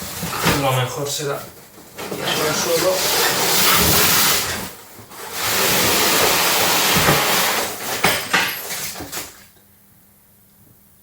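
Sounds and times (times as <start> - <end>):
cardboard box scraping and rustling: 2.0 - 7.7.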